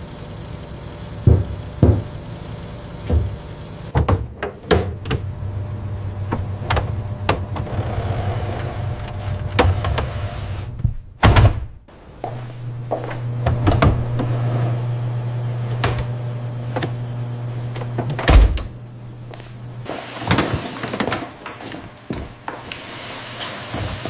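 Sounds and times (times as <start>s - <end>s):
machinery low hum: 0.0s - 4.0s, 4.8s - 11.0s, 11.8s - 20.9s
knocks and clunks: 1.2s - 2.2s, 3.0s - 5.3s, 6.2s - 8.0s.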